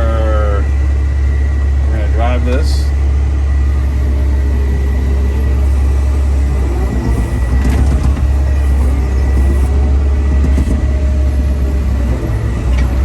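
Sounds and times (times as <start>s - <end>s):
faint high whine: 0.0s - 9.8s
diesel engine running: 0.0s - 13.0s.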